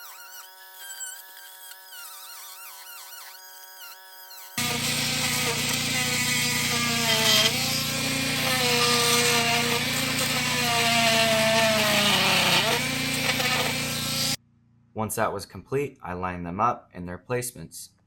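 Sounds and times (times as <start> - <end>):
oscillating multi-tool cutting wood: 0.0 - 14.4.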